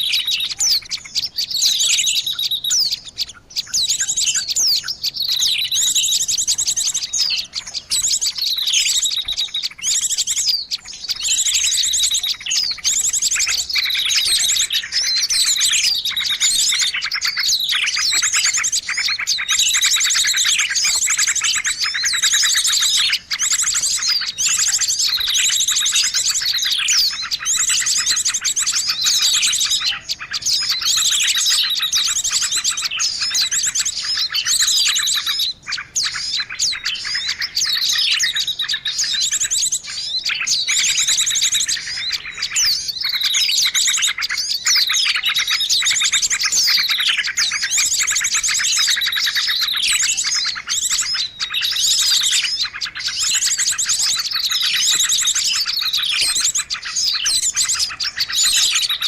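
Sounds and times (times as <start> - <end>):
songbird chirps and trills: 0.0 - 59.0.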